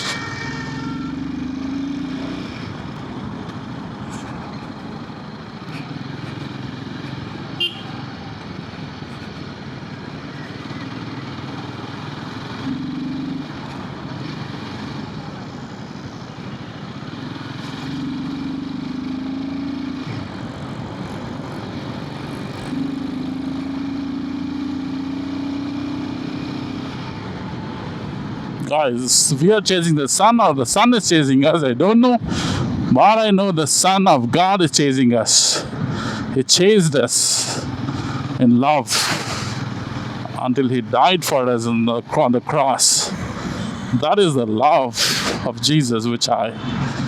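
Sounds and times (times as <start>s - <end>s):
motorcycle engine running: 0.0s - 28.7s, 37.2s - 41.6s
wind and road noise: 0.0s - 47.0s.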